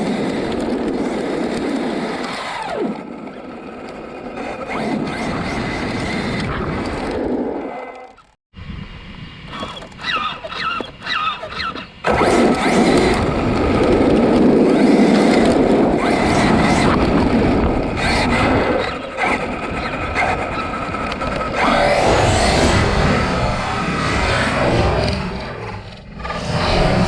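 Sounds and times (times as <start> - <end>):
electric motor whining: 21.6 - 27.0.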